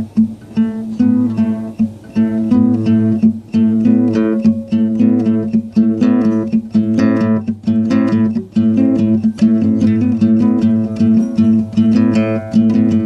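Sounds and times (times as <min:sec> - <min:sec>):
acoustic guitar: 0:00.0 - 0:13.0.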